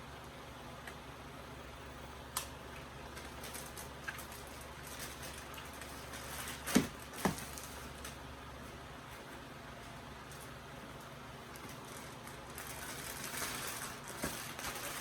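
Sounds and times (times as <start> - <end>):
cards and papers rustling: 3.1 - 8.2, 11.5 - 15.0.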